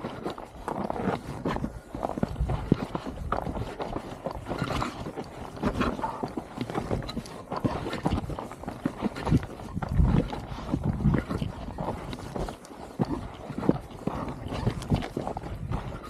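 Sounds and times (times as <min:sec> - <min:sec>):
footsteps on rough ground: 0:00.0 - 0:16.0.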